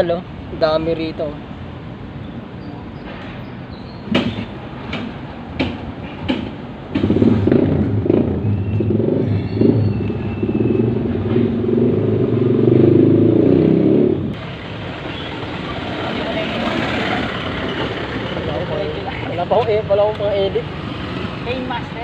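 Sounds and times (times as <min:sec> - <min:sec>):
vehicle engine running loudly: 0:06.9 - 0:19.2.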